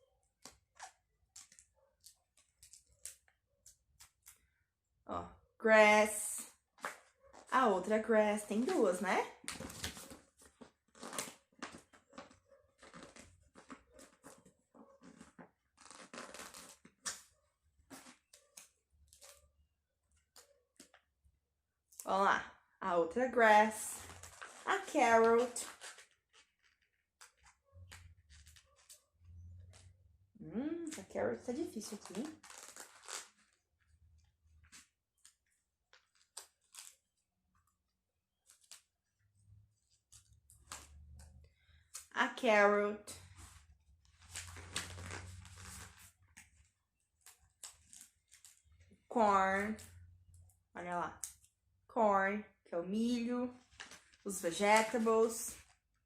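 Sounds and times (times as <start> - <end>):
paper crackling and tearing: 9.4 - 19.5, 23.8 - 29.9, 31.6 - 41.8, 43.2 - 48.9
paper tearing and rustling: 24.0 - 29.9, 31.8 - 33.6, 34.6 - 37.2, 43.3 - 46.6, 47.2 - 48.6.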